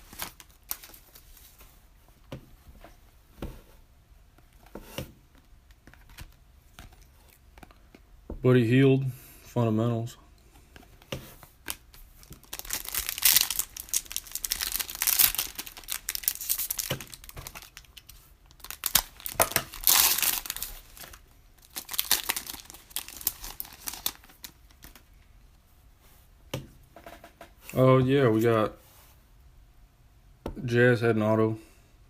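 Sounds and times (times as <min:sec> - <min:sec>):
foil wrapper tearing and crinkling: 0:11.7 - 0:25.0.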